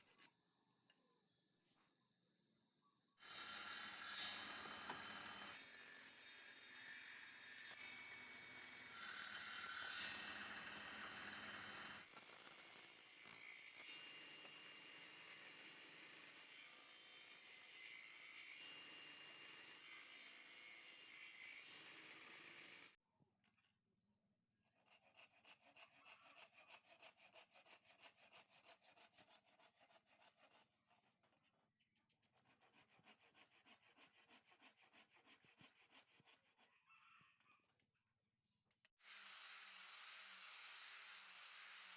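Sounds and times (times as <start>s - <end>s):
hand tools scraping wood: 24.7s - 36.7s.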